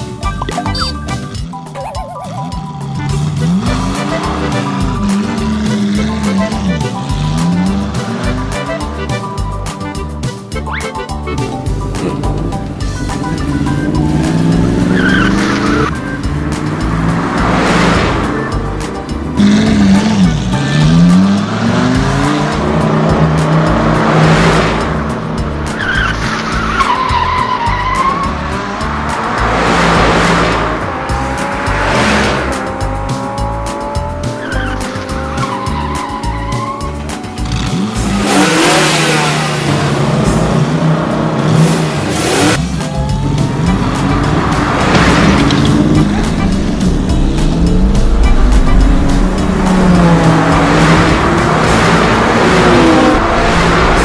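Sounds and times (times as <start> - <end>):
background music: 0.0 - 54.0
car engines revving: 0.0 - 54.0
tyres skidding: 0.0 - 54.0
cars whooshing past: 11.2 - 54.0.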